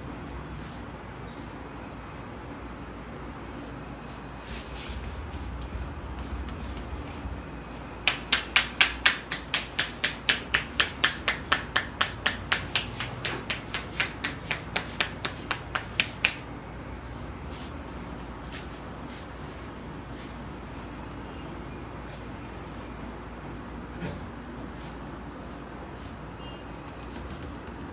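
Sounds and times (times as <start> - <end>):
hands clapping against head: 8.0 - 16.5.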